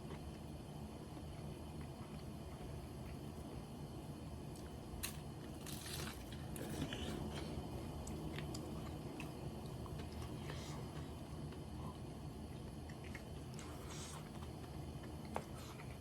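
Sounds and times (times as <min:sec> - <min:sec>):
chewing: 0:04.5 - 0:16.0.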